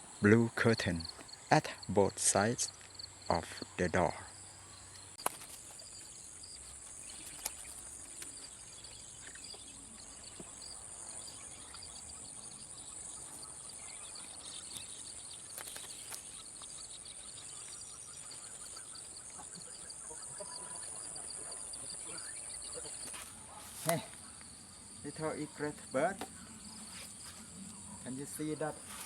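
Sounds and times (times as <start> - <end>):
crickets chirping: 0.0 - 29.0
faint clicks: 6.9 - 8.5.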